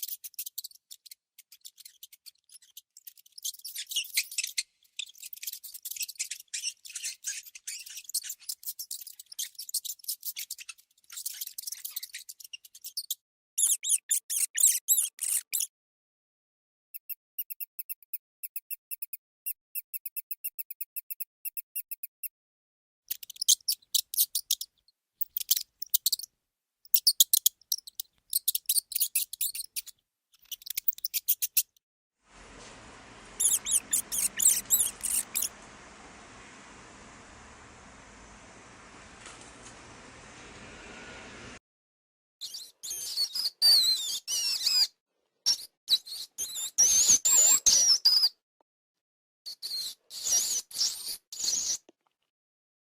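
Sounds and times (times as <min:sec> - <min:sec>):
mice squeaking high-pitched: 0:00.0 - 0:15.7, 0:23.1 - 0:26.3, 0:26.9 - 0:31.8, 0:33.2 - 0:36.1, 0:42.4 - 0:44.9
steady hiss: 0:32.3 - 0:41.6.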